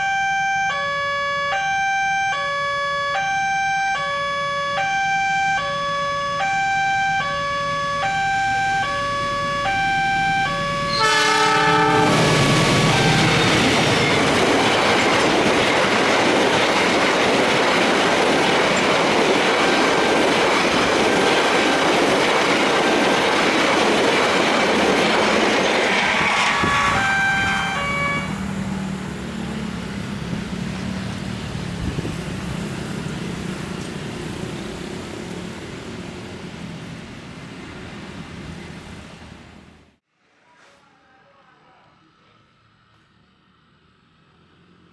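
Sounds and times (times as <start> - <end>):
two-tone crossing warning siren: 0.0 - 30.7
train rumbling and clattering: 8.9 - 40.0
train horn: 10.4 - 15.0, 26.1 - 28.5.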